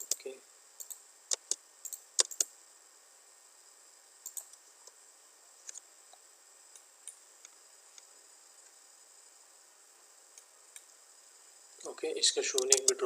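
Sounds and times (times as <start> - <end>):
mouse and keyboard clicking: 0.0 - 2.5, 4.2 - 4.6, 12.6 - 13.0.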